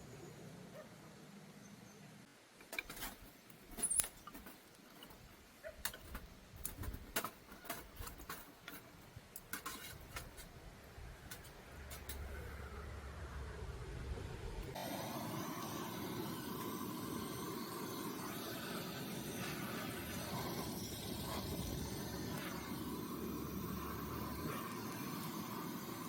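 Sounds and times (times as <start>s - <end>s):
small objects clicking and clinking: 2.7s - 10.5s.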